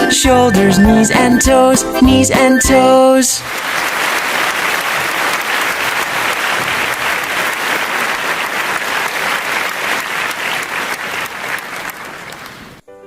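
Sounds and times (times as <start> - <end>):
applause: 3.4 - 12.8.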